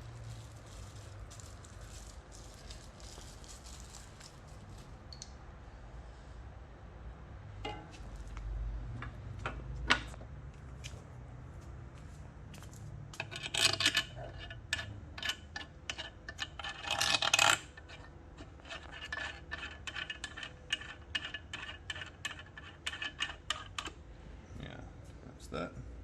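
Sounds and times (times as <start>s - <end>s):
scraping rustles: 0.0s - 5.0s.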